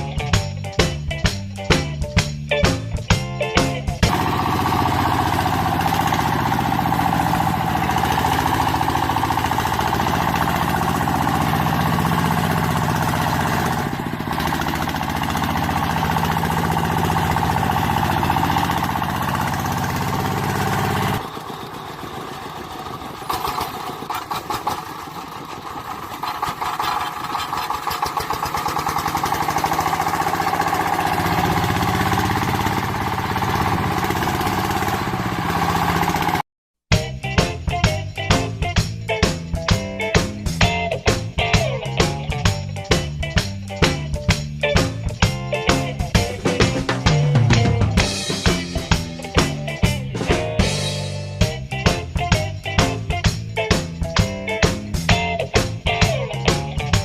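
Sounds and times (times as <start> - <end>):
motor running: 4.1 - 36.4.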